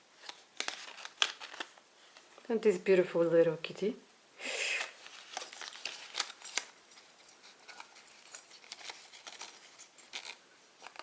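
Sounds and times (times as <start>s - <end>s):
paper rustling: 0.2s - 2.4s, 4.8s - 11.0s.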